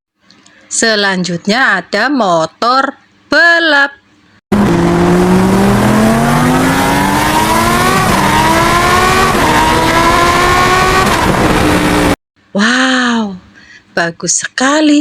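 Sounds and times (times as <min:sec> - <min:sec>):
motorcycle engine accelerating: 0:04.5 - 0:12.2.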